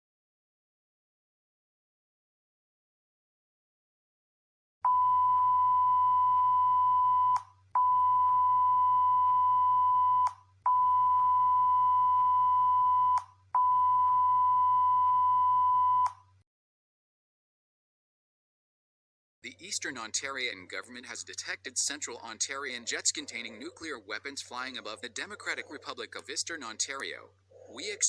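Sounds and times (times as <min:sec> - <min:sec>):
continuous low hum: 0:19.4 - 0:28.0.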